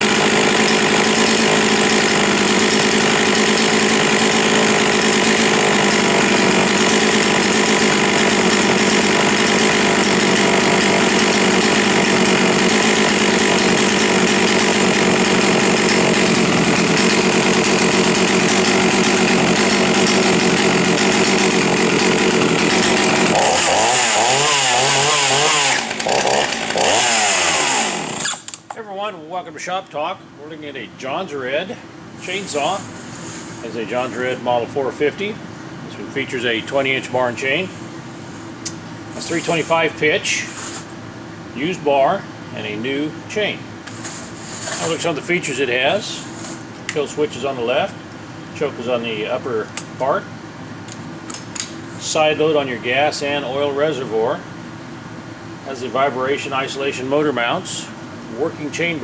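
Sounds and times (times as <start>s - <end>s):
chainsaw running: 0.0s - 28.8s, 32.2s - 48.0s, 50.9s - 54.4s, 55.4s - 59.0s.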